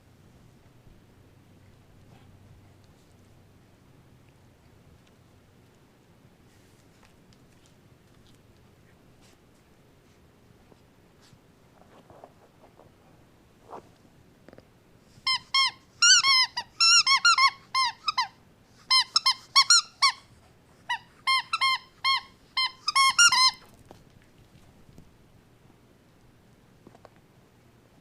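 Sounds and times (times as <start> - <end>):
faint short scratches: 6.5 - 14.6
high-pitched squeaks: 20.9 - 23.6.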